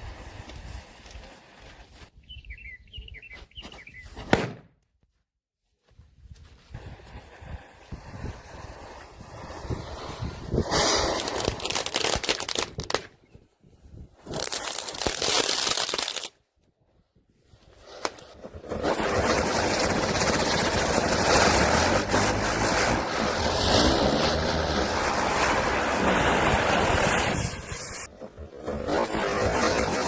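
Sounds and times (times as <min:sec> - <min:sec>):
firecrackers hissing: 0:00.0 - 0:01.9, 0:06.8 - 0:13.0, 0:14.3 - 0:16.3, 0:17.8 - 0:30.0.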